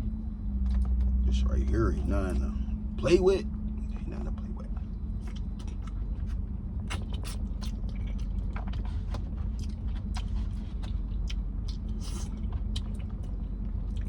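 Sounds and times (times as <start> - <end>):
steady low hum: 0.0 - 14.0
chewing and lip smacks: 4.6 - 14.0.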